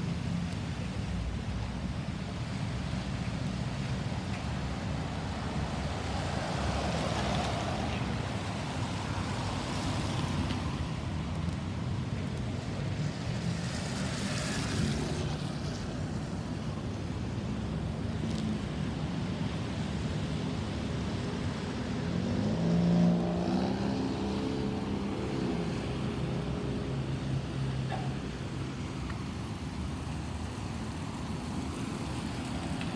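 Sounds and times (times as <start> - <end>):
road traffic: 0.0 - 32.9
passing vehicle engine: 22.0 - 28.2.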